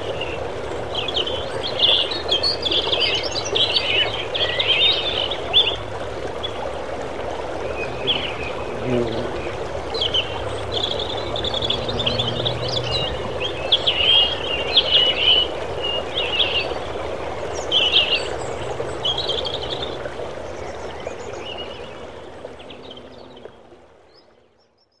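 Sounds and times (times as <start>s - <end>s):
babbling brook: 0.0s - 24.8s.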